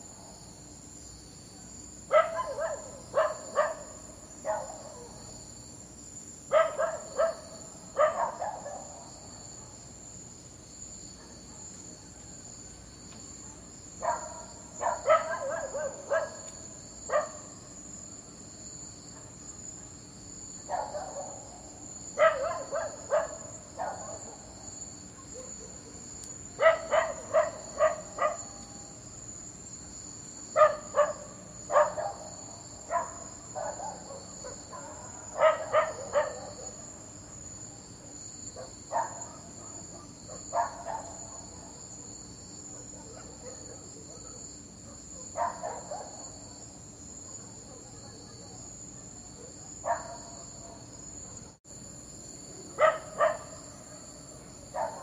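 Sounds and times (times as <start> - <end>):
dog barking: 2.1 - 5.3, 6.5 - 9.8, 11.1 - 11.8, 13.4 - 17.5, 19.1 - 20.0, 20.7 - 28.8, 30.5 - 37.5, 38.6 - 46.4, 47.2 - 51.6, 52.7 - 54.1, 54.7 - 55.0.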